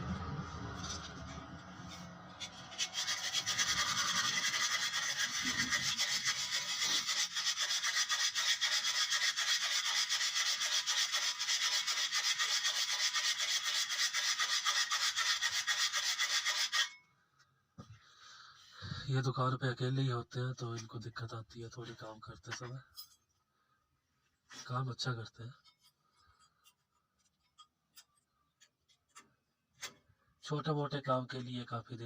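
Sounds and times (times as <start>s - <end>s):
rasp filing brake pad: 0.1s - 17.0s.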